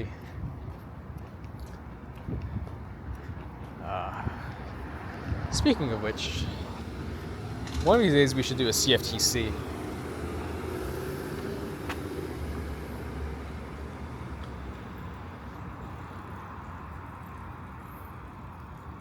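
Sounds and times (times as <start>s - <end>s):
vehicle engine rumbling: 0.4s - 18.4s.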